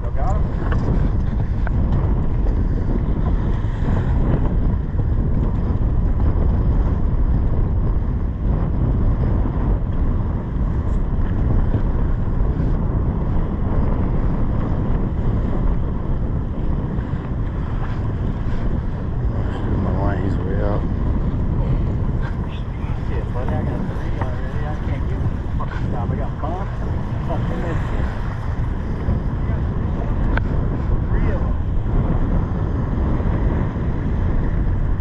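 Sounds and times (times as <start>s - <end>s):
water washing around boat: 0.0s - 32.0s
wind rumbling on microphone: 0.0s - 35.0s.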